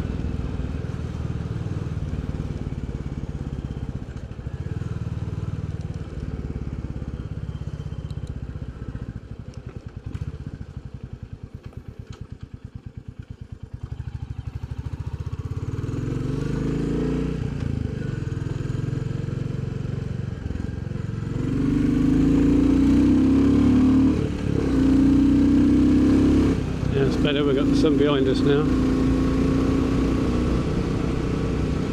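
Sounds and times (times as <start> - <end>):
motorcycle engine exhaust beat: 24.2 - 31.9.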